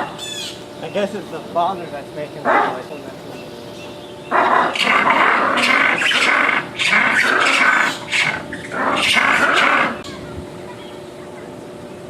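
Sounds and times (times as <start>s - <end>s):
lemurs calling harshly: 0.0s - 11.3s.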